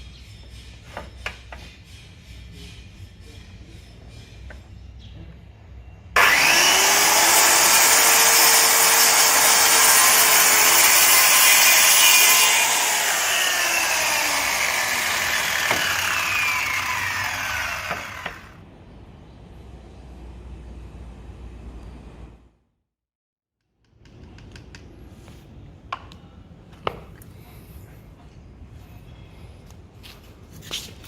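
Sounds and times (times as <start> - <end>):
electric power tool cutting wood: 6.2 - 18.6.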